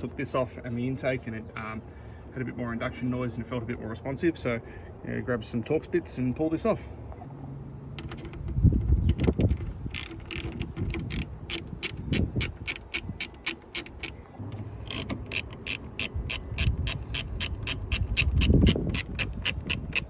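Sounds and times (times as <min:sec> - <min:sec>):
ratchet clicking: 0:09.9 - 0:14.2, 0:14.9 - 0:20.0.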